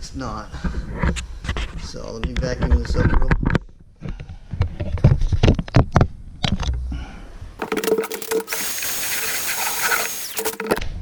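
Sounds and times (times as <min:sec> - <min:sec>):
handling knocks and clicks: 0:07.6 - 0:10.8
vacuum cleaner motor whine: 0:07.7 - 0:10.8.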